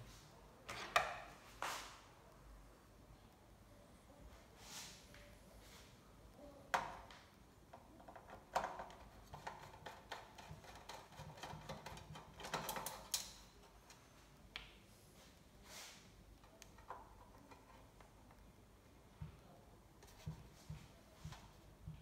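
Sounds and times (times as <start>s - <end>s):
hand tools clicking and tapping: 8.1s - 14.0s.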